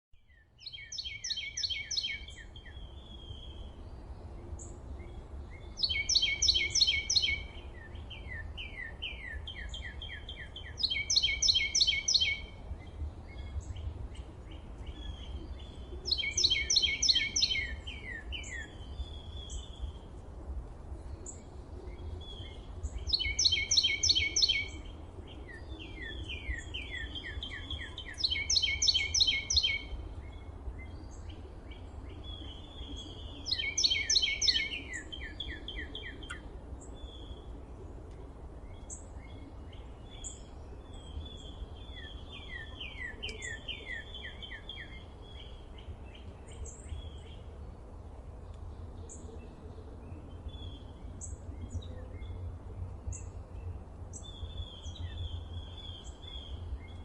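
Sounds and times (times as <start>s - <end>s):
songbird singing loud phrase: 0.1s - 20.0s, 21.2s - 37.5s, 38.7s - 47.6s
birds chirping and trilling: 0.2s - 57.0s
steady low rumble: 2.2s - 57.0s.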